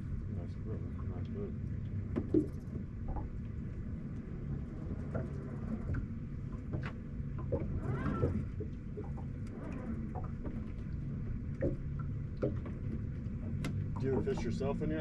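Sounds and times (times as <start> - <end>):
boat motor humming: 0.0 - 15.0
light clicks: 13.5 - 14.4.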